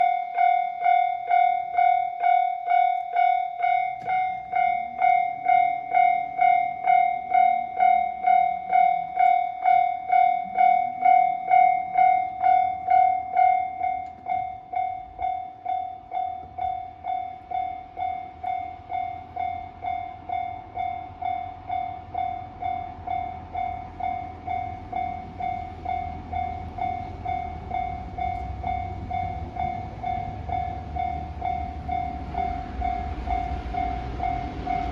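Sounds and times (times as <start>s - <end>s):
level-crossing alarm ringing: 0.0s - 34.9s
low train rumble: 0.0s - 34.9s.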